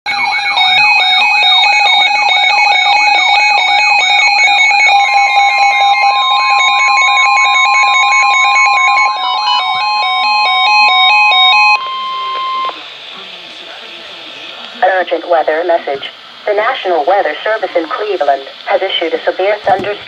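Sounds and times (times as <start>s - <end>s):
siren-like sweeping tone: 0.1s - 12.8s
steady warning alarm tone: 0.1s - 20.0s
stepping beeps: 1.0s - 12.8s.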